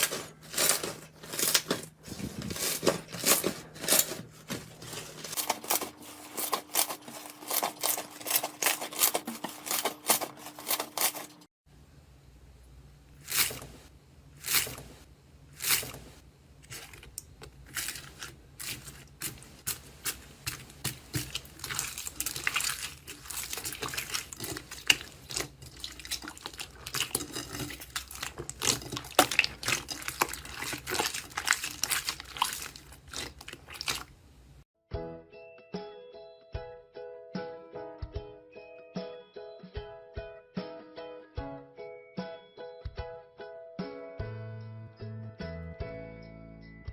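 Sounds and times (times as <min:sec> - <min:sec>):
crisp crackling and crunching: 0:00.0 - 0:11.5, 0:15.6 - 0:34.3
music with plucked notes: 0:34.9 - 0:46.9.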